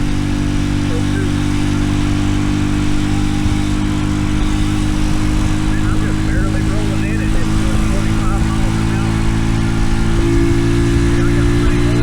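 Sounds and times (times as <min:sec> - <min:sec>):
loud mini bike engine: 0:00.0 - 0:12.0.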